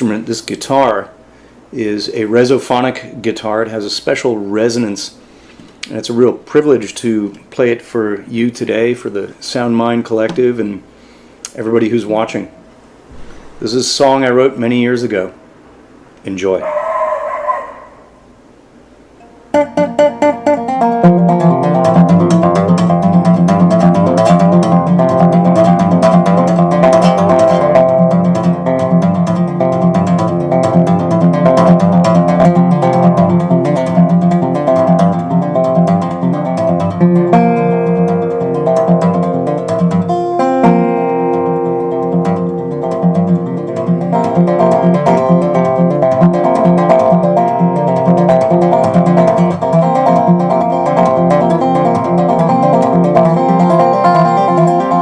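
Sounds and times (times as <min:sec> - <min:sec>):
resophonic guitar picking: 0:19.1 - 0:55.0.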